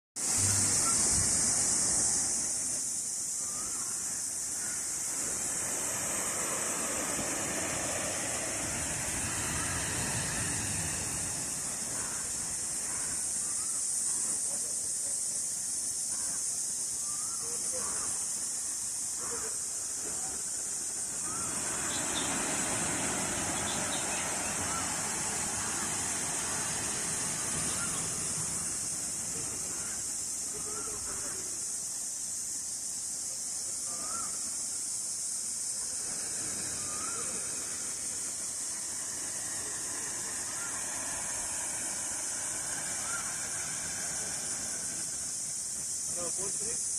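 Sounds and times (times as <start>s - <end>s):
steady high-pitched hiss: 0.2s - 46.9s
rising-and-falling chirp: 21.2s - 25.6s.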